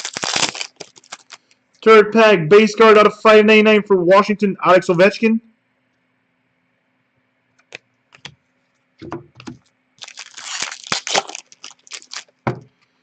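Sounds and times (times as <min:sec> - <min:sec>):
foil pack tearing and crinkling: 0:00.0 - 0:01.5, 0:10.0 - 0:12.4.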